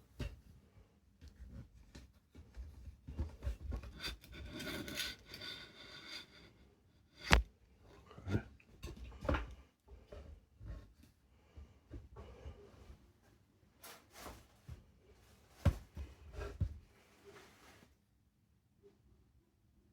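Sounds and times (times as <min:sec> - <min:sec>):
rubbing and scraping on workbench: 0:03.6 - 0:06.5.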